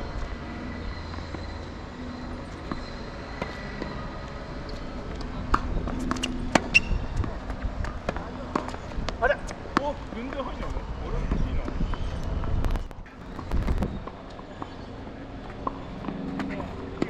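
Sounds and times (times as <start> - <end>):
wind buffeting microphone: 4.1 - 14.3.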